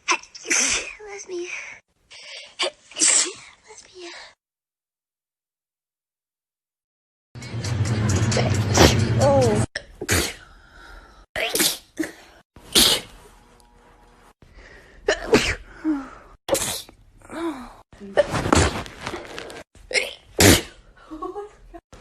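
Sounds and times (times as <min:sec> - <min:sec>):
person sneezing: 0:02.4 - 0:03.6, 0:10.0 - 0:10.5, 0:11.4 - 0:13.2, 0:15.1 - 0:18.7, 0:19.9 - 0:20.8.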